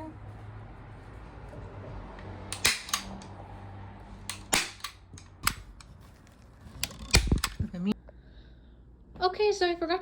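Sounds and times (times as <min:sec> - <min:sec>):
staple gun firing: 0:02.5 - 0:03.2, 0:04.3 - 0:05.7, 0:07.1 - 0:07.6.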